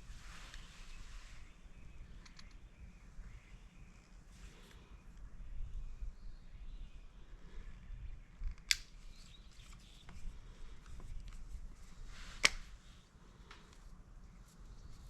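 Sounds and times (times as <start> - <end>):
small handling clicks: 2.1 - 2.6, 8.3 - 11.6, 12.4 - 12.8
sharp clicks: 2.2 - 2.6, 8.4 - 9.0.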